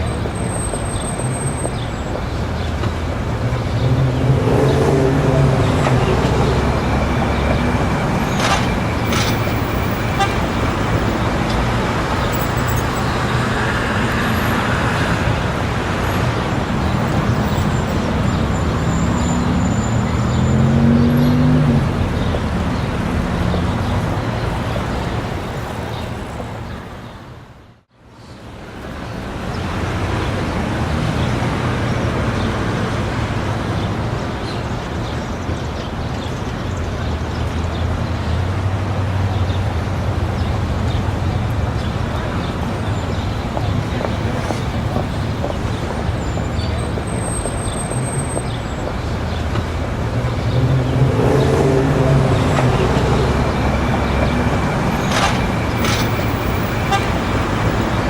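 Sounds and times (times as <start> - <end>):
traffic road noise: 0.0 - 58.0
vehicles passing by: 0.0 - 58.0
car horn tooting: 10.0 - 11.0, 56.7 - 57.7.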